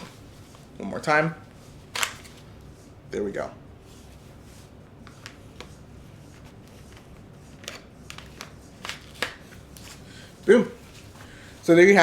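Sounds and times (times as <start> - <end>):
clothing rustling: 0.0 - 0.8, 8.8 - 11.8.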